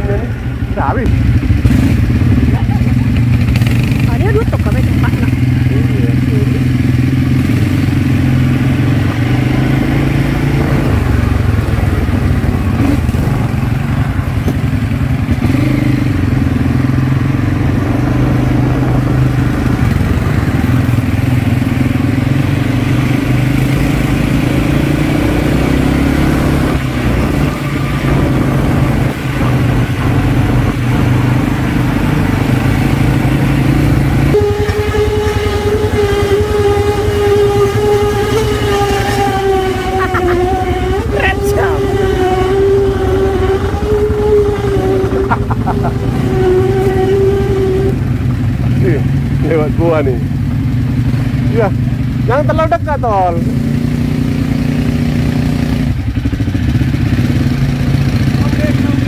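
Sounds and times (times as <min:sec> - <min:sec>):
atv engine running: 0:00.0 - 0:59.0
higher steady tone: 0:33.5 - 0:48.3.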